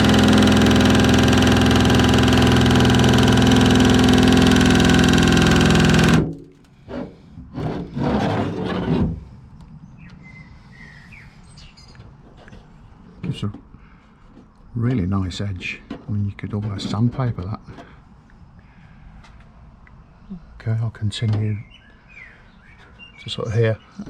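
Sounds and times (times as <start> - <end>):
nibbler cutting sheet steel: 0.0 - 6.5.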